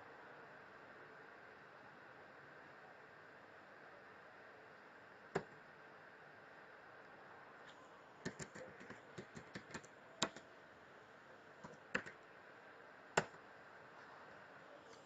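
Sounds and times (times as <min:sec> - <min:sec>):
keyboard typing: 0:08.2 - 0:10.5, 0:11.6 - 0:12.2.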